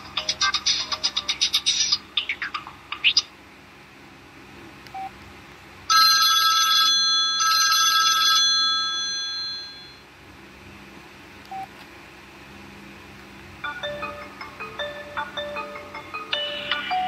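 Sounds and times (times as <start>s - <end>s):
telephone bell ringtone: 5.9s - 10.0s, 13.6s - 17.0s.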